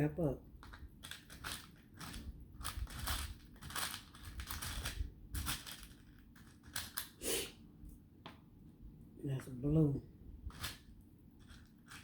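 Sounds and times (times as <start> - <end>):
beads clicking and rattling: 0.6 - 7.1.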